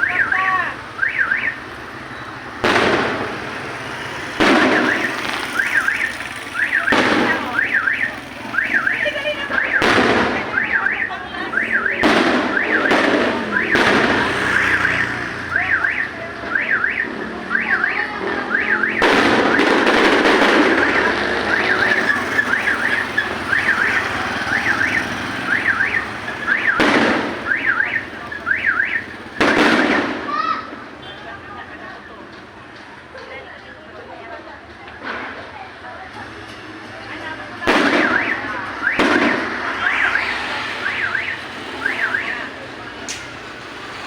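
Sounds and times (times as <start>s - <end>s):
car alarm wailing: 0.0s - 2.6s, 4.5s - 29.6s, 37.8s - 42.7s
fireworks bangs: 0.0s - 31.6s, 35.0s - 44.0s
fireworks crackling: 0.0s - 33.3s, 34.7s - 44.0s.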